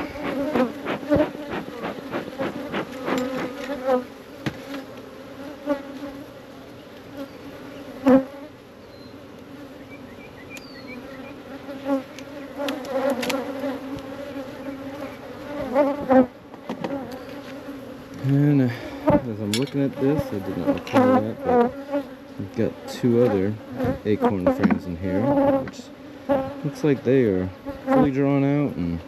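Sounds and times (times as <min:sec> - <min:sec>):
honeybees buzzing: 0:00.0 - 0:29.0
sharp knocks and scrapes: 0:23.8 - 0:24.9.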